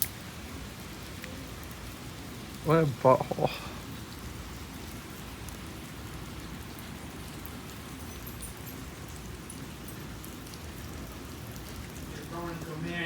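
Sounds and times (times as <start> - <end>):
steady outdoor hiss: 0.0 - 13.0.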